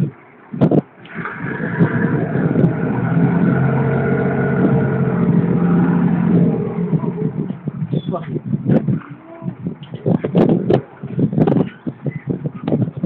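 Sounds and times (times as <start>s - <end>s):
boat engine revving: 0.9s - 8.4s.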